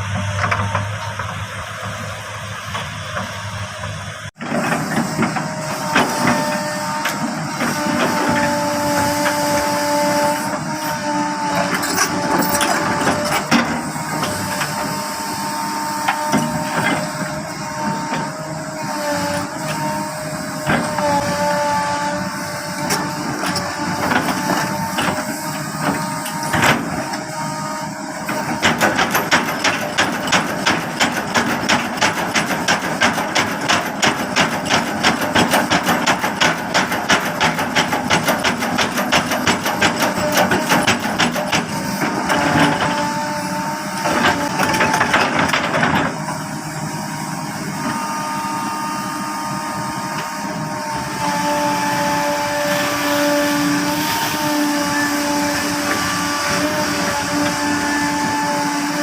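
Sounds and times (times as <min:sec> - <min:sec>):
excavator engine running: 0:00.0 - 0:59.0.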